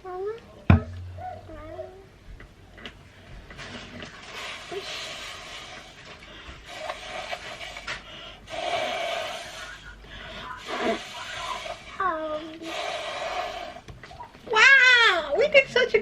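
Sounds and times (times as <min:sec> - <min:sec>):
blowing through a straw: 0:03.6 - 0:09.8, 0:10.5 - 0:13.9.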